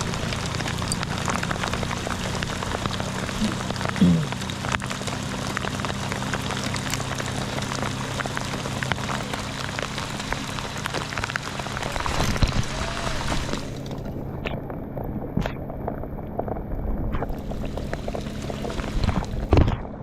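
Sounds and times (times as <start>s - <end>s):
heavy rain falling: 0.0s - 19.6s
low hum: 0.0s - 20.0s.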